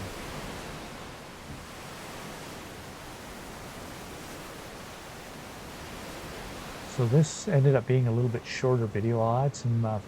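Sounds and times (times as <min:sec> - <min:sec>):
wind and surf rushing: 0:00.0 - 0:10.0.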